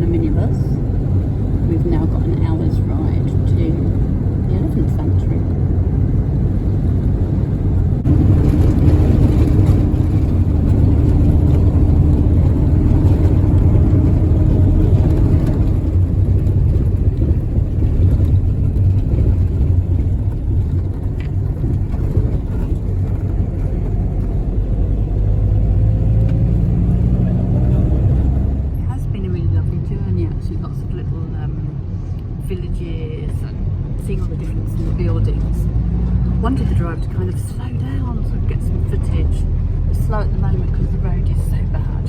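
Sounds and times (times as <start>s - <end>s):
vehicle engine and road rumble: 0.0s - 42.0s.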